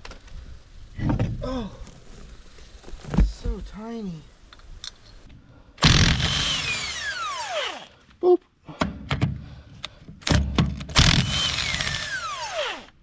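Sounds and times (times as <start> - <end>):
power tool whining: 5.8 - 8.0, 10.9 - 13.0.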